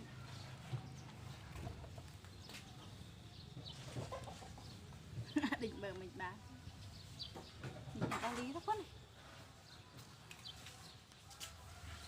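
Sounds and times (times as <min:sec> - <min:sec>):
chickens clucking: 0:00.1 - 0:05.8.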